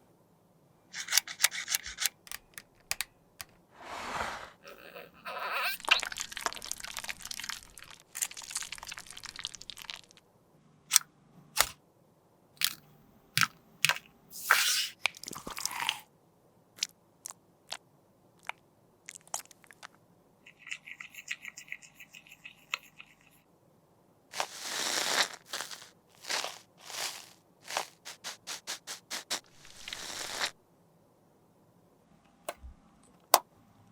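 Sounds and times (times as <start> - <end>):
sharp clicks and taps: 1.1 - 3.6
makeup crushed and scraped: 24.3 - 30.6.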